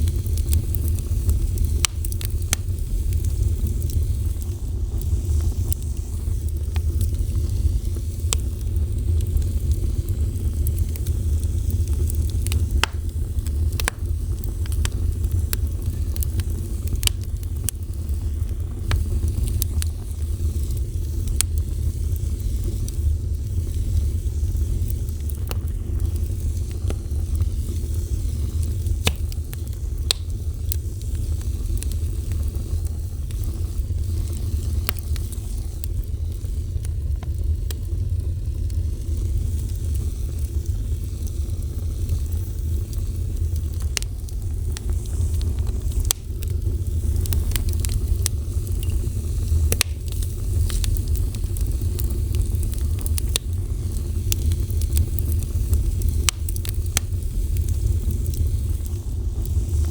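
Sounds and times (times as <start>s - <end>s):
fire crackling and popping: 0.0s - 59.9s.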